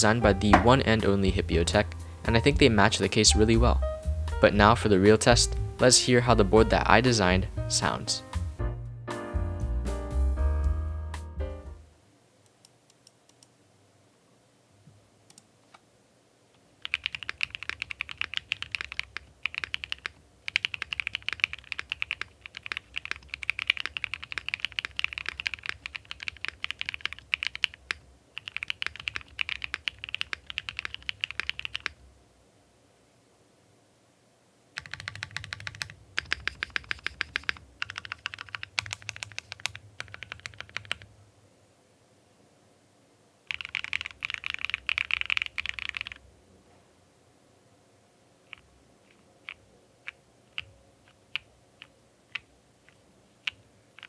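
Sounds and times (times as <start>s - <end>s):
typing on mechanical keyboard: 16.8s - 32.0s, 34.8s - 41.1s, 43.5s - 46.2s, 48.5s - 54.0s.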